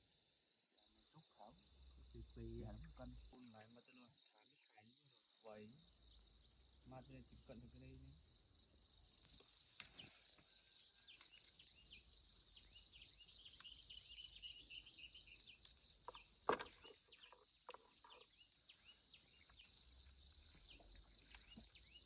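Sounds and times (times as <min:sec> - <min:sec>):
insects trilling: 0:00.0 - 0:22.0
bird chirps: 0:09.4 - 0:22.0
knocks or rustles: 0:16.1 - 0:17.8.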